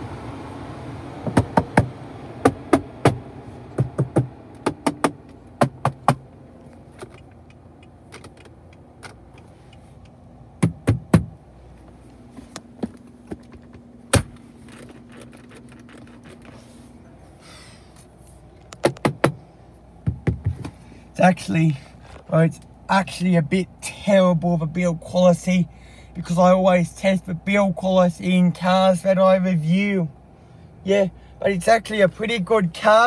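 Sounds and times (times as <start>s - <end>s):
faint steady hum: 0.0s - 33.0s
knocking on plastic trim: 3.8s - 6.2s, 20.0s - 20.7s.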